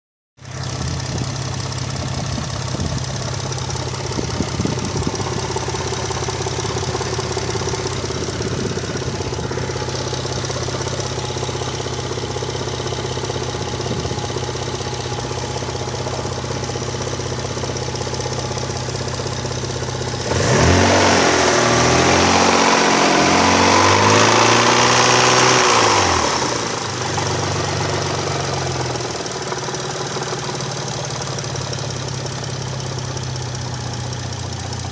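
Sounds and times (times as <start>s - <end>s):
engine revving: 20.1s - 29.0s.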